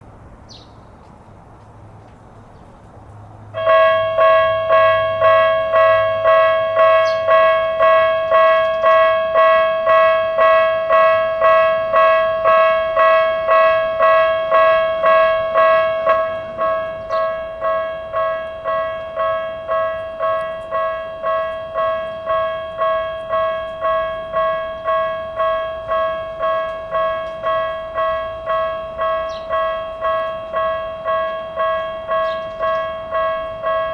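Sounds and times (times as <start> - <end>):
level crossing warning bell: 3.5 - 33.9.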